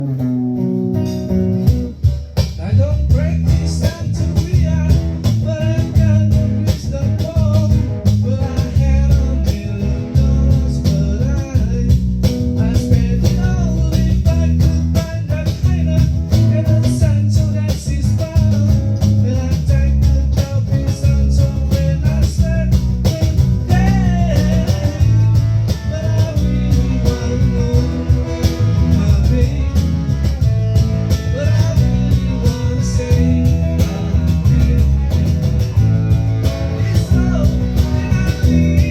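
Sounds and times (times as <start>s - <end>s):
guitar: 0.0s - 38.9s
live band jamming: 0.0s - 38.9s.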